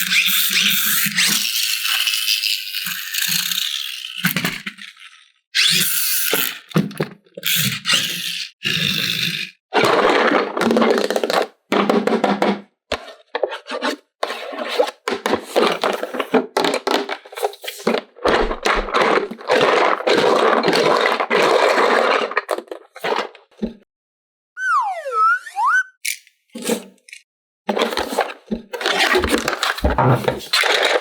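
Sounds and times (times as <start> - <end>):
cardboard and plastic rustling: 14.5 - 23.3, 27.7 - 31.0.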